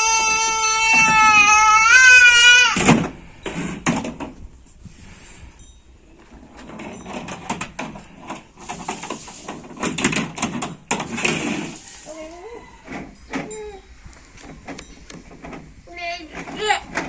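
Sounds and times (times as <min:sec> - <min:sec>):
child crying: 0:00.0 - 0:02.8
plastic toy vehicles clattering: 0:06.4 - 0:12.0.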